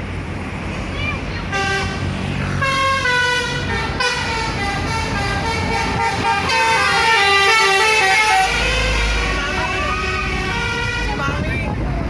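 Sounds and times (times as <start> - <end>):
low rumble of traffic: 0.0 - 12.0
bus horn playing a tune: 1.5 - 11.4.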